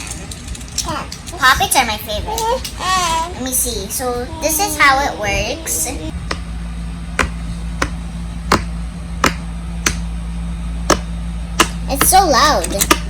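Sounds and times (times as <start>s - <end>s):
fidget toy popping: 7.2s - 10.0s.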